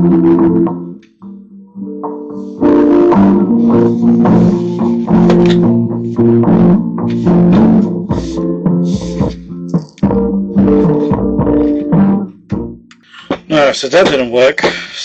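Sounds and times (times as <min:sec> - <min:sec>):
bass guitar: 0:00.0 - 0:14.7
guitar: 0:00.0 - 0:15.0
drum kit: 0:02.5 - 0:14.9.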